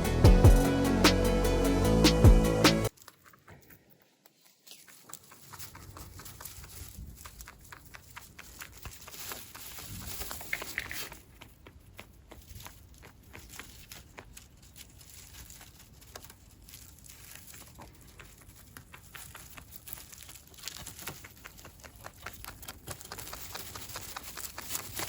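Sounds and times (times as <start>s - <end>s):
rabbit clicking and tapping: 4.9s - 14.4s, 17.4s - 25.0s.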